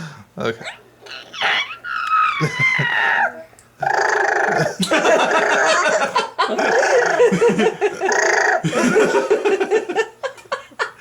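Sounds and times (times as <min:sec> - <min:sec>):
baby laughing: 0:00.6 - 0:03.4, 0:04.0 - 0:08.7.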